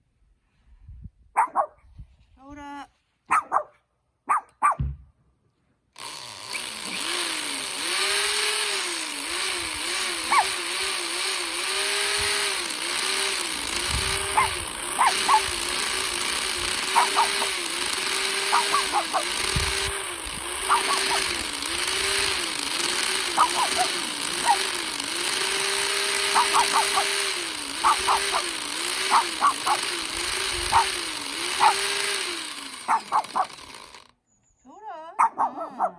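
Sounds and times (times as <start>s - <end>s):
chainsaw cutting log: 5.9s - 34.2s
high-pitched squeaks: 14.3s - 15.6s, 16.8s - 17.7s, 18.4s - 19.6s, 23.4s - 24.7s, 26.3s - 27.1s, 27.8s - 28.5s, 32.8s - 33.6s.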